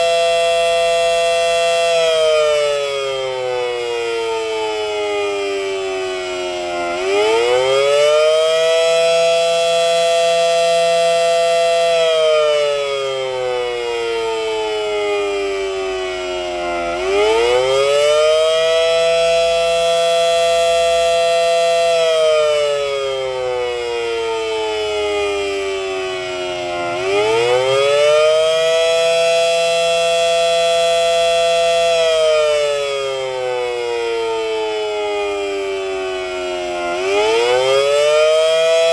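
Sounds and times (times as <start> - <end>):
warning siren wailing: 0.0 - 38.9.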